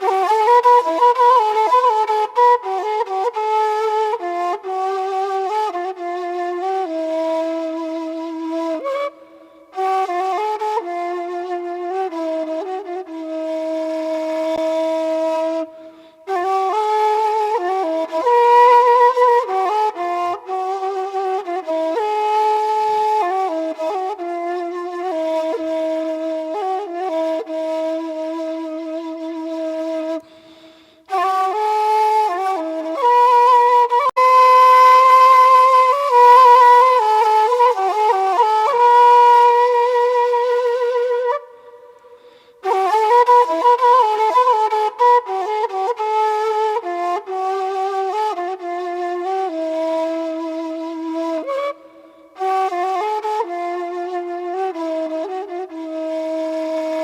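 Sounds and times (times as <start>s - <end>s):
flute-like wind instrument melody: 0.0s - 57.0s.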